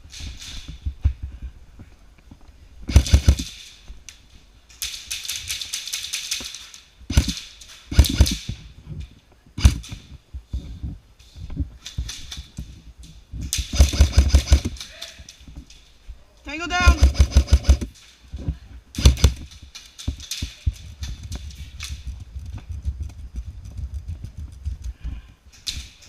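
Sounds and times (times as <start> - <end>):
rustling and knocks from movement: 0.0 - 16.1, 17.0 - 26.0
airsoft gun bursts: 2.9 - 3.6, 7.1 - 8.4, 13.6 - 15.2, 16.6 - 18.0, 19.0 - 19.4.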